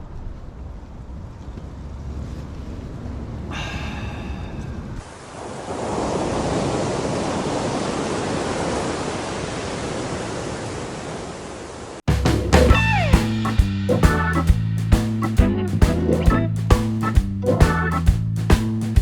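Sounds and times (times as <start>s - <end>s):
surf and wind: 0.0s - 13.6s
plucked guitar music with beat: 12.4s - 19.0s.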